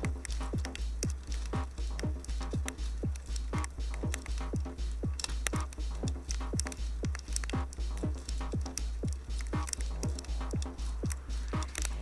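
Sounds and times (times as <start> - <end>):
hi-hat ticks: 0.0 - 12.0
sustained low bass: 0.0 - 12.0
kick drum: 1.6 - 9.3.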